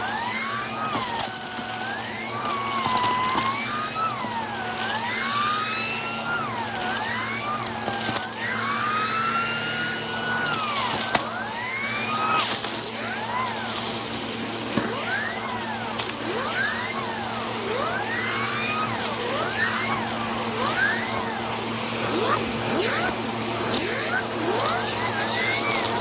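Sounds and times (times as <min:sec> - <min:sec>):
debris rattling up hose: 0:00.0 - 0:26.0
vacuum cleaner motor whine: 0:00.0 - 0:26.0.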